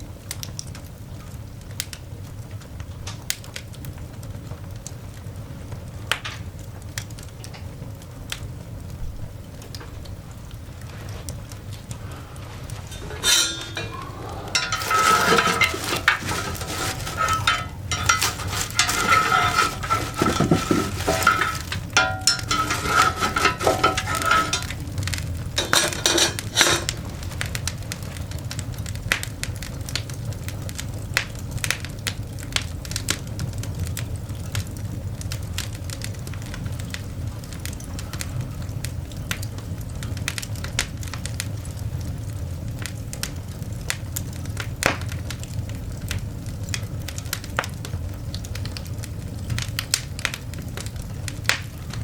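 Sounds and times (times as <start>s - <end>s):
coal fire crackling and popping: 0.0s - 52.0s
metal clinking and scraping: 12.8s - 27.1s.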